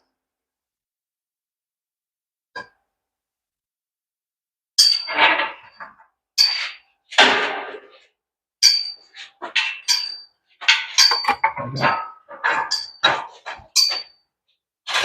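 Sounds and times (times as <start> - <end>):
metal jack stand clanking: 9.5 - 14.0.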